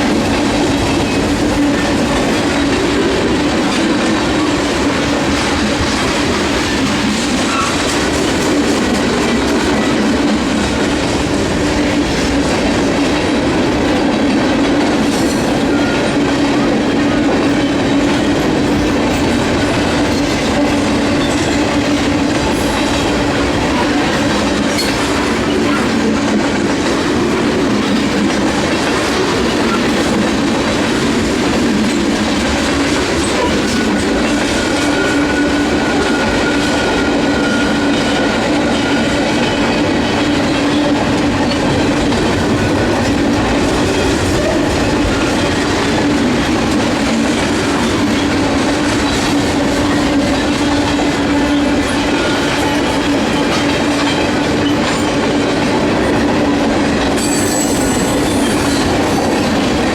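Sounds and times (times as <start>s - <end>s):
freight train cars rumbling: 0.0s - 59.9s
high wheel squeal: 57.2s - 59.2s.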